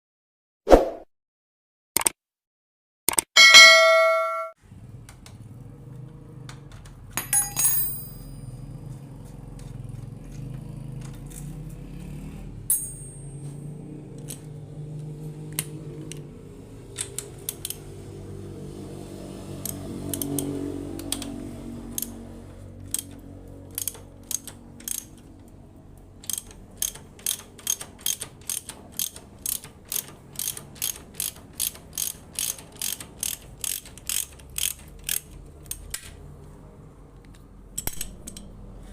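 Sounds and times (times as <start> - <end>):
motorcycle wheel hub humming: 3.4 - 36.0
brake clicking: 22.8 - 36.6.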